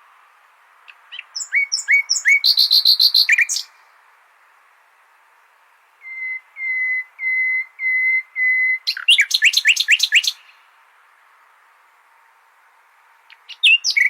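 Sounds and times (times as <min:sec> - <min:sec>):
nightingale singing: 0:00.7 - 0:04.0, 0:06.0 - 0:10.7, 0:13.2 - 0:14.0.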